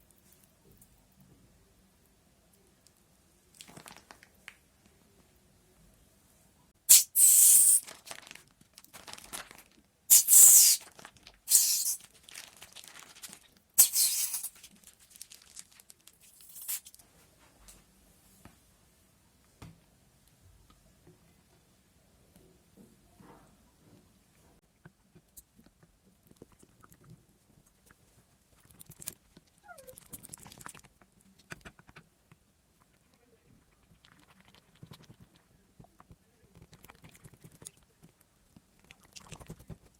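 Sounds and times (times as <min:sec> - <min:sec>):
slime crinkling and tearing: 0:03.6 - 0:04.3, 0:07.8 - 0:09.8, 0:10.7 - 0:17.0.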